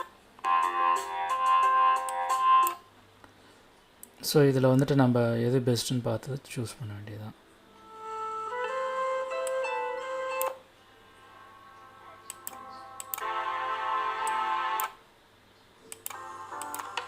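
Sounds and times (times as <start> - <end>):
instrumental background music: 0.0 - 2.8, 7.7 - 15.0, 15.9 - 17.0
sharp clicks: 12.3 - 13.3, 15.9 - 17.0.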